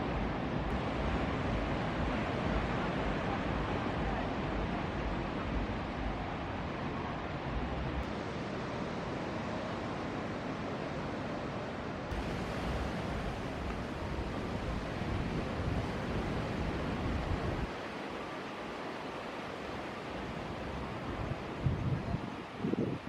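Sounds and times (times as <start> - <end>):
ocean surf breaking: 0.0 - 23.0
wind buffeting microphone: 12.1 - 17.9, 20.1 - 23.0.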